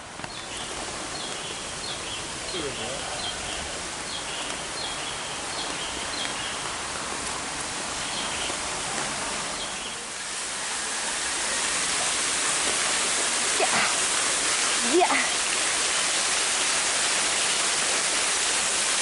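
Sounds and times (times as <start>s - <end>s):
waterfall rushing: 0.0s - 19.0s.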